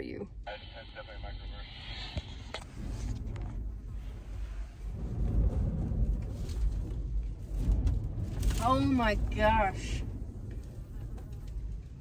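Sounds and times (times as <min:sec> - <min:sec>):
wind buffeting microphone: 0:02.6 - 0:12.0.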